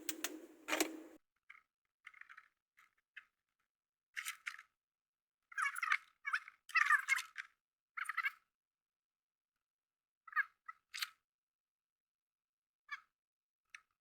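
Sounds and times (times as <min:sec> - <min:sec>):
plastic trim clicking and squeaking: 0:00.0 - 0:01.1.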